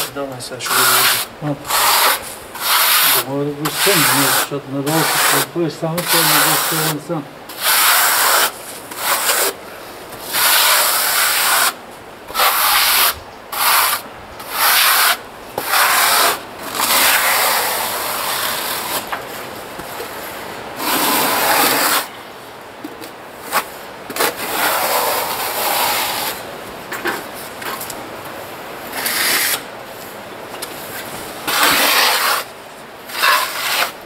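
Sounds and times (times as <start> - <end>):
trowel scraping adhesive on wall: 0.0 - 9.6, 10.2 - 19.2, 20.8 - 22.1, 23.4 - 26.4, 28.9 - 29.6, 31.0 - 32.5, 33.1 - 34.0.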